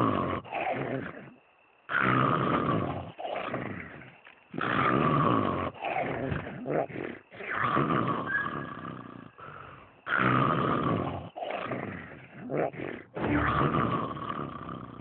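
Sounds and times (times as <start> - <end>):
cartoon character snoring: 0.0 - 4.0, 7.8 - 15.0.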